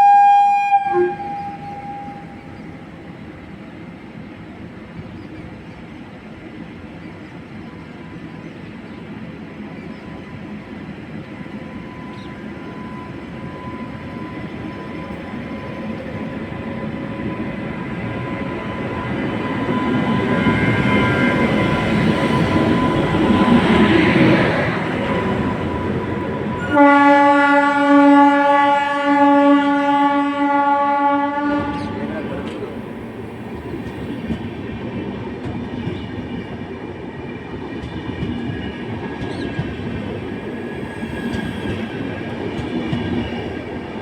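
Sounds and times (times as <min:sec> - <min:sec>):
locomotive horn blast: 0:00.0 - 0:02.6, 0:25.6 - 0:32.0
train rumbling on rails: 0:00.0 - 0:44.0.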